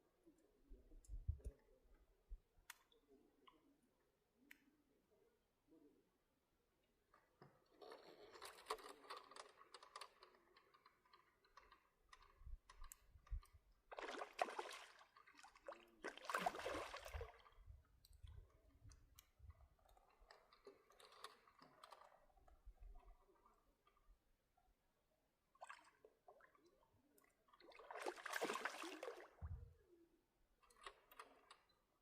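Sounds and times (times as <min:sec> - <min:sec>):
clicking and rustling handling noises: 0:06.8 - 0:13.9, 0:17.6 - 0:24.1, 0:30.4 - 0:32.0.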